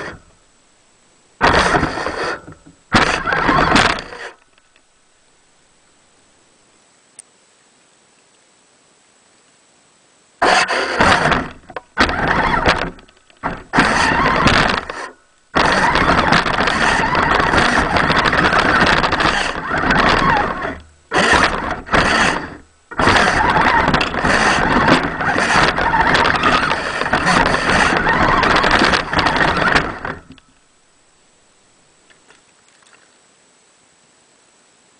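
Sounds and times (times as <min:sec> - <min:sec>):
toy truck motor bursts: 0:01.4 - 0:04.4, 0:10.4 - 0:30.4
tyres in snow: 0:01.4 - 0:04.4, 0:10.4 - 0:30.6.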